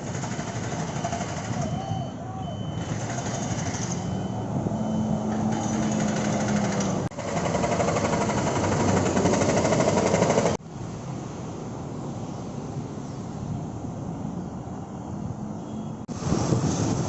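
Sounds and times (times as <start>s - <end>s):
fast mechanical rattle: 0.0s - 1.7s, 2.9s - 4.0s, 5.5s - 10.6s
engine-like hum: 0.0s - 11.6s.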